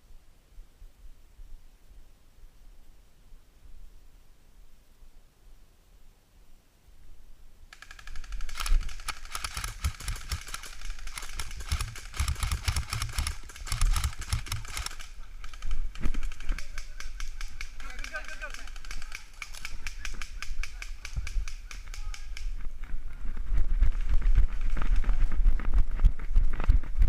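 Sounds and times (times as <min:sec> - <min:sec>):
airsoft guns firing in bursts: 0:07.7 - 0:21.6.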